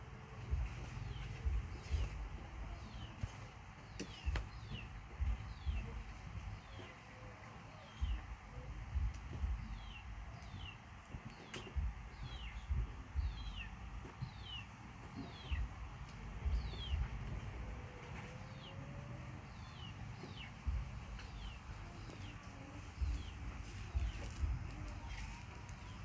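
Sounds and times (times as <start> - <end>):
bird chirping: 0.4 - 26.0
low thumps: 0.5 - 3.1, 4.2 - 6.8, 8.0 - 10.6, 11.7 - 14.5, 15.2 - 17.9, 20.2 - 22.0, 22.9 - 25.3.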